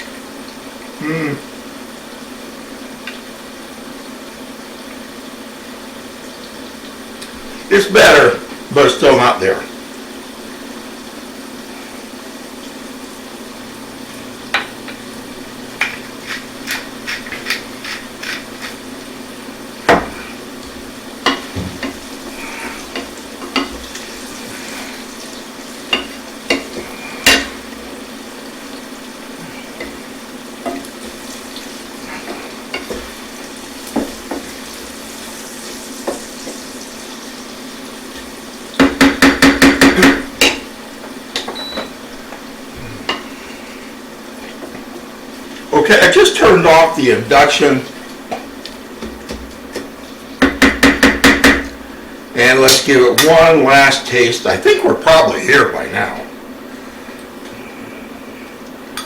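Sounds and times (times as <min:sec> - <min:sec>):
food sizzling in a pan: 0:00.0 - 0:59.0
spoon clinking and scraping pan: 0:15.8 - 0:18.8.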